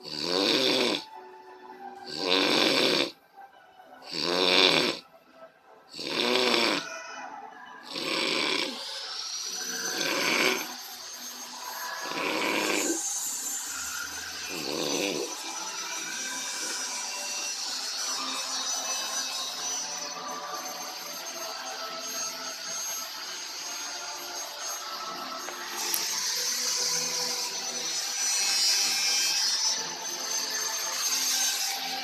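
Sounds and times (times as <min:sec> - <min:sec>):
person snoring: 0:00.0 - 0:01.1, 0:02.0 - 0:03.2, 0:04.0 - 0:05.0, 0:05.9 - 0:07.1, 0:07.8 - 0:10.9, 0:11.5 - 0:18.2
steady high whine: 0:07.5 - 0:32.0.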